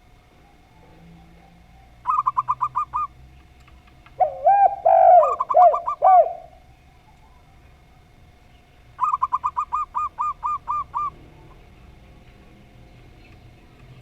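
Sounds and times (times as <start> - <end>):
lower dove coos: 0.3 - 3.2, 4.1 - 7.6, 9.0 - 11.5
high quick dove coos: 4.2 - 6.6.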